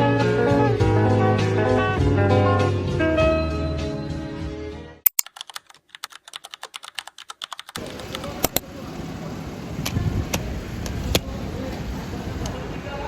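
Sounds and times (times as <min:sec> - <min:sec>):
guitar music: 0:00.0 - 0:04.4
fast keyboard typing: 0:05.1 - 0:08.2
steady background noise: 0:07.5 - 0:13.0.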